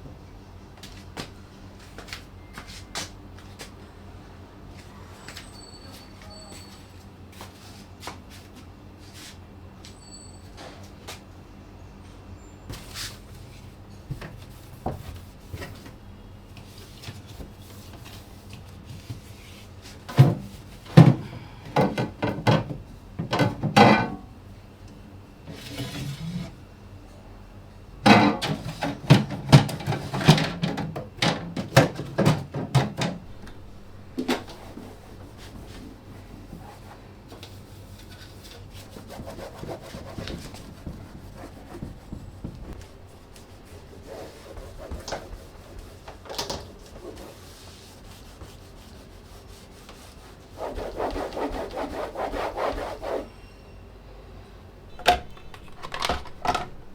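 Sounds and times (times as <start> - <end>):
knocking and clatter: 55.0 - 56.9.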